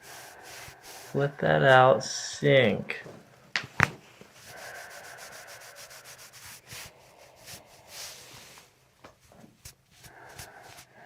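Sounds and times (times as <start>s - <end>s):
hands rubbing on body: 0.0s - 1.3s, 3.9s - 11.0s.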